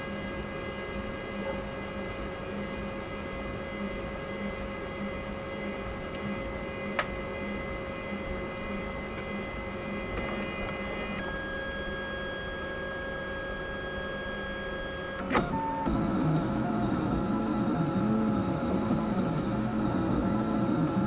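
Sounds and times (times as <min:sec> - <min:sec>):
click: 0:10.1 - 0:10.8, 0:15.2 - 0:21.0
stepper motors whining: 0:15.2 - 0:21.0.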